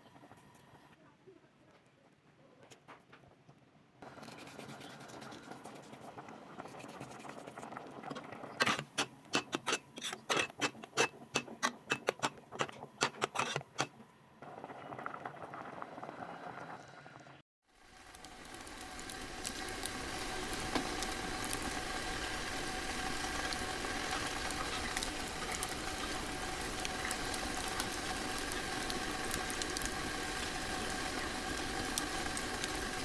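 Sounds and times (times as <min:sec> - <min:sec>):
cooking hiss: 0:04.0 - 0:33.0
utensil scraping a cooking pan: 0:04.1 - 0:07.8, 0:08.5 - 0:14.0.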